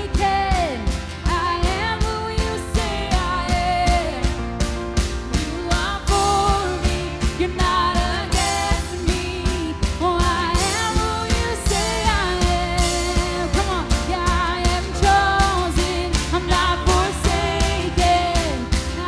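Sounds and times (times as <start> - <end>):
steady drum beat: 0.0 - 19.0
upbeat band music: 0.0 - 19.0
person singing: 5.3 - 19.0.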